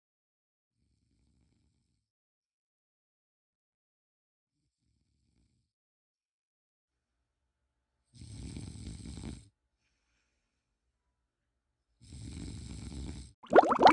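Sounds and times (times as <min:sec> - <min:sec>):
rattling snores: 0:08.2 - 0:09.5, 0:12.0 - 0:13.4.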